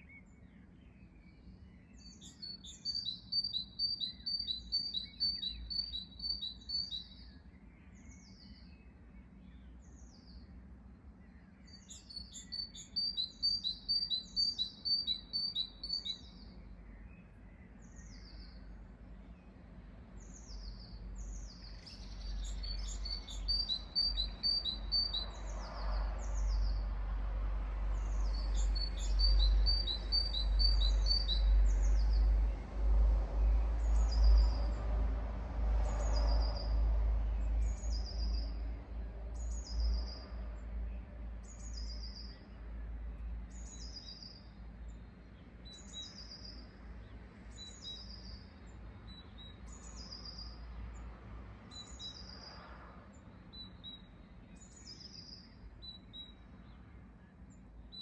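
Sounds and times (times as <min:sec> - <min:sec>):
birds chirping: 0:00.0 - 0:26.9, 0:27.9 - 0:32.8
low rumble: 0:24.8 - 0:43.5.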